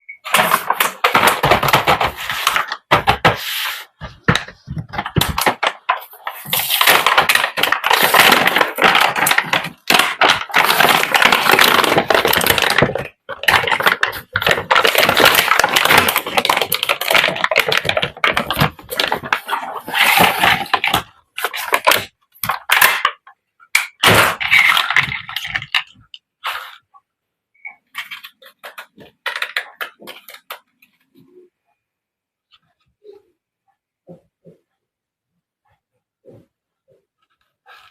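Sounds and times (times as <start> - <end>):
plastic packaging crinkling: 4.2 - 26.8.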